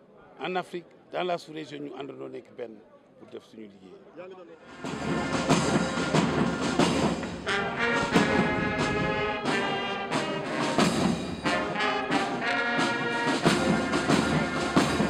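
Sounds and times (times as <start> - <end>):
brass band playing: 4.6 - 15.0
drum strokes: 4.7 - 15.0.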